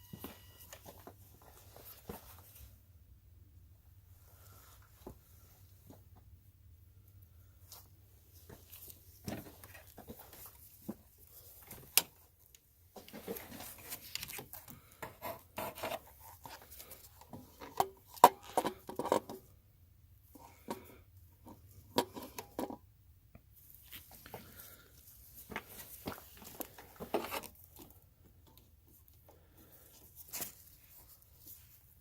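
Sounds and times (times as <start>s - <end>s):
objects being handled: 7.7s - 19.6s, 20.2s - 32.0s.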